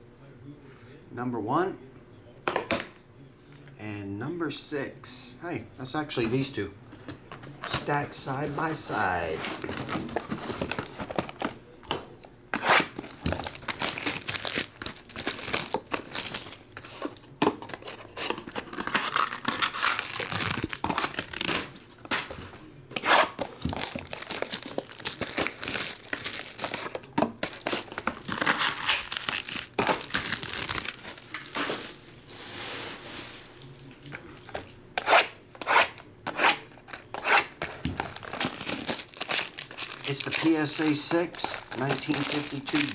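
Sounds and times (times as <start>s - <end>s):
packaging ripping and crinkling: 7.6s - 11.5s, 12.7s - 22.3s, 23.4s - 32.1s, 36.8s - 42.9s.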